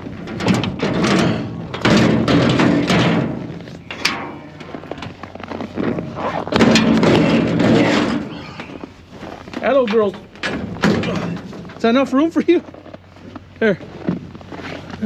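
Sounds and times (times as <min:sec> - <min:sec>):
cattle thumping in trailer: 0:00.0 - 0:08.8, 0:09.6 - 0:12.0.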